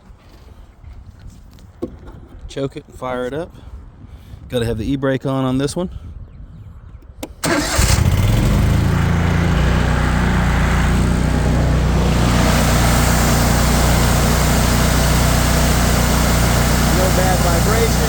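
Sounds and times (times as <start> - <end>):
ignition clicks: 7.2 - 8.4
mower engine starting and running: 7.3 - 18.0.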